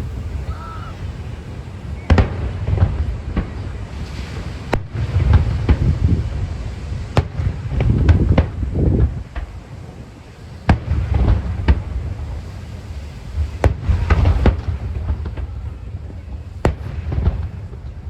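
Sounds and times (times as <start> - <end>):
low explosion rumble: 0.0 - 9.7.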